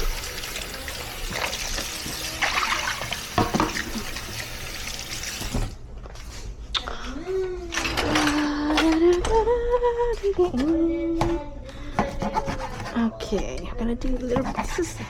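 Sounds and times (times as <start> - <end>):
tap running into sink: 0.0 - 5.7
dishes knocking: 3.3 - 4.1.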